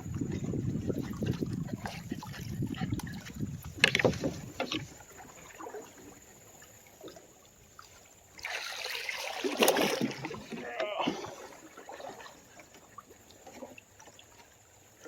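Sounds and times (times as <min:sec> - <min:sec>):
rushing splashing water: 0:00.0 - 0:15.0
knocks against canoe: 0:01.2 - 0:04.9.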